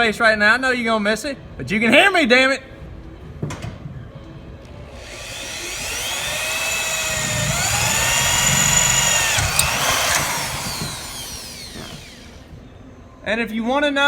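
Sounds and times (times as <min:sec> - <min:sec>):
power drill motor whine: 0:04.9 - 0:12.6.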